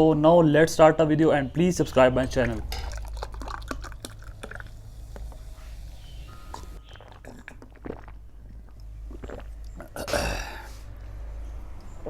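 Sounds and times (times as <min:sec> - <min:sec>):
wet mouth clicks: 0:02.6 - 0:05.5, 0:06.5 - 0:10.2
person chewing and biting: 0:02.7 - 0:05.4, 0:06.8 - 0:10.2.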